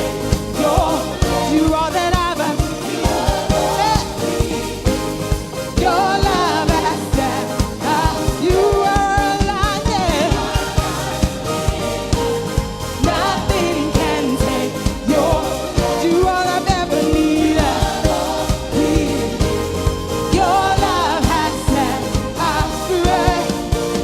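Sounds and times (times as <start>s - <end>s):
live band playing upbeat song: 0.0s - 24.0s
steady drum beat: 0.0s - 24.0s
voices singing: 0.0s - 24.0s.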